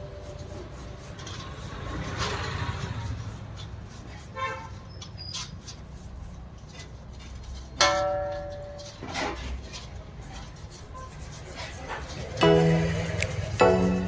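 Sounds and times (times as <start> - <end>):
vehicle horn beeping: 4.4 - 4.8.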